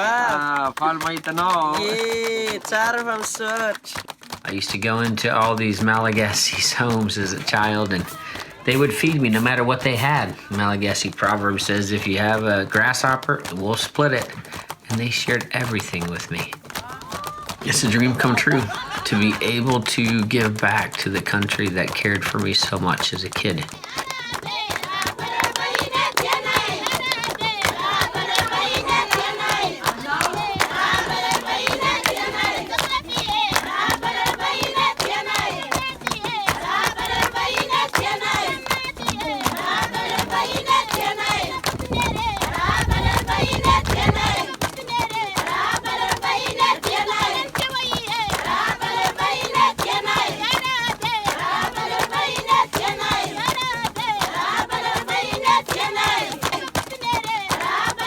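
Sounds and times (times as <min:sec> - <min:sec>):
crowd singing together: 0:00.0 - 0:00.4, 0:07.2 - 0:12.4, 0:17.6 - 0:19.9, 0:23.7 - 0:58.0
hand-clapping: 0:00.0 - 0:58.0.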